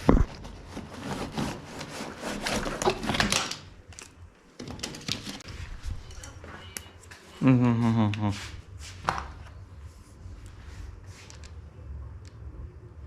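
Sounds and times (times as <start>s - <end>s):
hands handling wire and parts: 10.4s - 11.6s.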